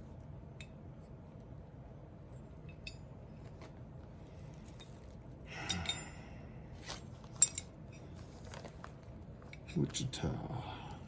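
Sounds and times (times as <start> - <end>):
metal gun parts clinking: 7.2 - 8.1.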